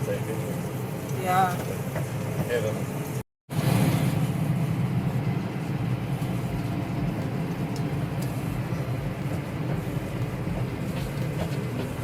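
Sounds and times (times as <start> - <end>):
rattling engine rumble: 0.0 - 12.0.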